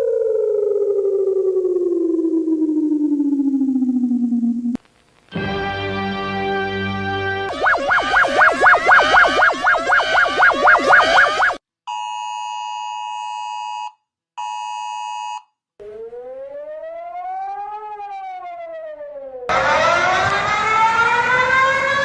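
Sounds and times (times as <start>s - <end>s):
fast warbling siren: 0.0s - 4.8s, 7.5s - 11.6s, 15.8s - 22.0s
loud rising siren: 0.0s - 4.8s, 7.5s - 11.6s, 15.8s - 22.0s
rising and falling siren: 0.0s - 4.8s, 7.5s - 11.6s, 15.8s - 22.0s
two-tone buzzes: 7.5s - 11.6s.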